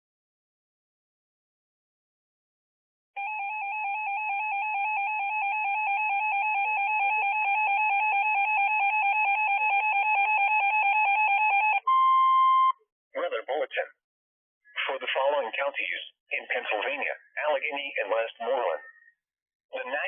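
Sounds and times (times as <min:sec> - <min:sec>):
emergency alert warble: 0:03.2 - 0:12.8.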